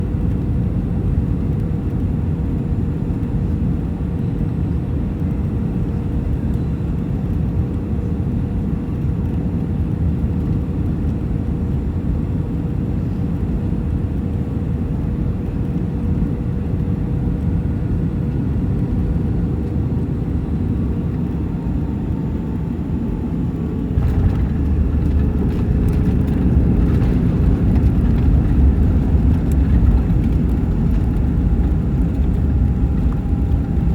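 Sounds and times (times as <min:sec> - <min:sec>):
aircraft cabin rumble: 0:00.0 - 0:33.9.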